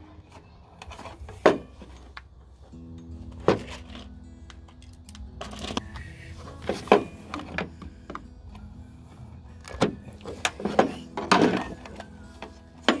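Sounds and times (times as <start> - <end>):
steady low hum: 0.8 - 13.0
knocks and clicks of tools: 9.6 - 13.0.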